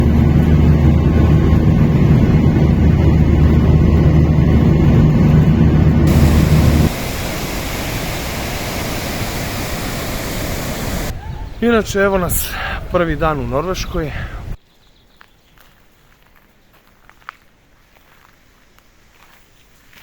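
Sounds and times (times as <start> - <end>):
low mechanical drone: 0.0 - 11.1
rushing hiss: 6.1 - 11.1.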